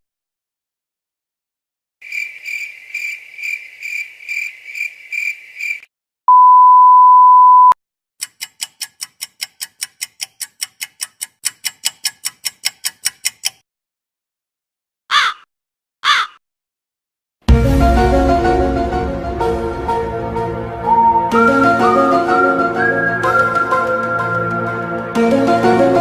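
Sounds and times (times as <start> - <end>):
cricket chirping: 2.0 - 5.9
censor bleep: 6.3 - 7.8
fast run of clicks: 8.2 - 13.6.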